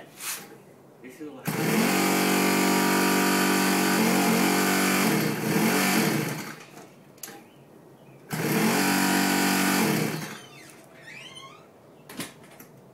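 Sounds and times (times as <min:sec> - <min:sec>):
electric starter cranking engine: 0:01.5 - 0:06.7, 0:08.3 - 0:10.5.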